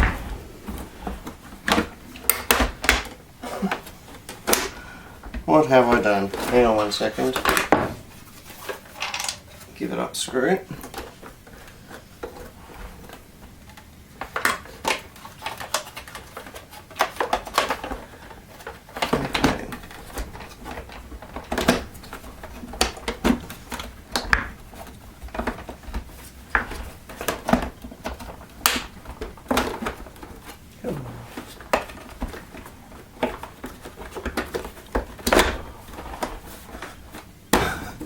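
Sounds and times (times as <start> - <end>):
plastic parts clicking and rattling: 8.6 - 9.7, 10.8 - 30.7, 31.3 - 37.6.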